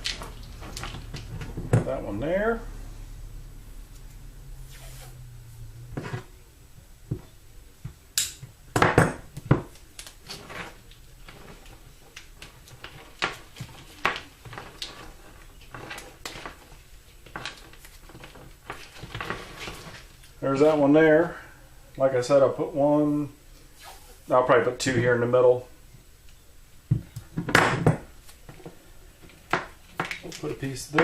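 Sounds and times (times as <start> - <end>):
tape peeling off roll: 3.9 - 6.3.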